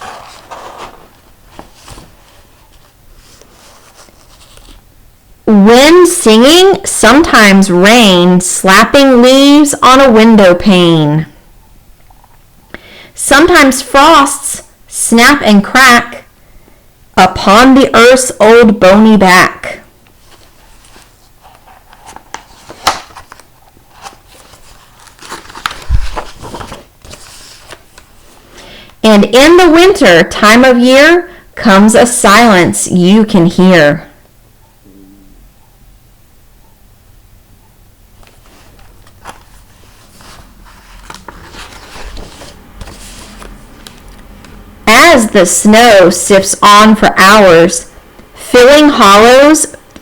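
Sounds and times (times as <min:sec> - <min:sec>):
paper rustling and crinkling: 0:00.0 - 0:04.8, 0:20.2 - 0:28.6, 0:38.2 - 0:44.4.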